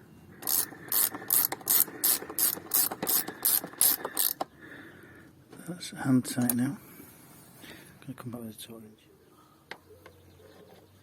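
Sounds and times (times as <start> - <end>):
ratchet wrench clicking: 0.4 - 4.4.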